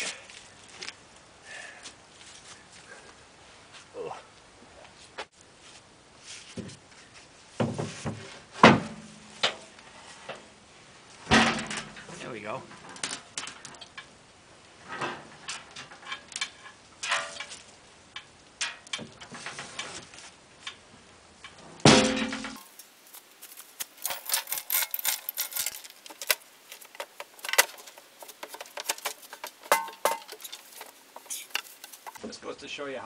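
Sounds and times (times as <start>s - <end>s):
heavy metal clank: 21.8s - 22.7s, 24.0s - 32.2s
metal chain clinking: 23.5s - 32.2s.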